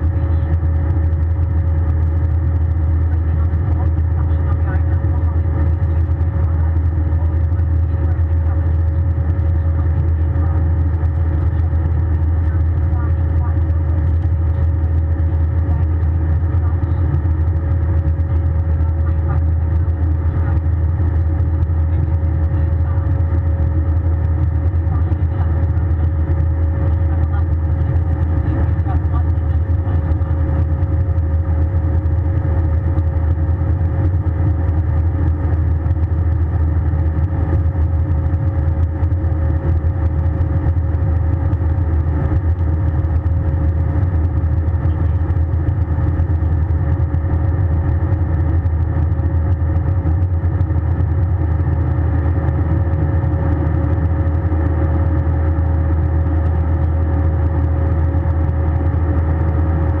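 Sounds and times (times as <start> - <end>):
airliner cabin drone: 0.0 - 60.0
thin steady whine: 0.0 - 60.0.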